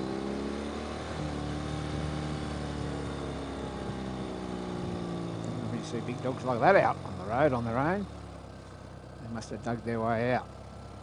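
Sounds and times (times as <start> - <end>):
motorcycle engine running: 0.0 - 11.0
road noise: 0.0 - 11.0.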